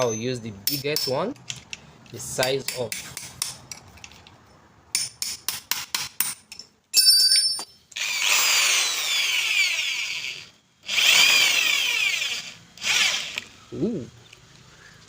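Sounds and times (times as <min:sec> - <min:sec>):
power drill boring a hole: 0:08.0 - 0:13.5.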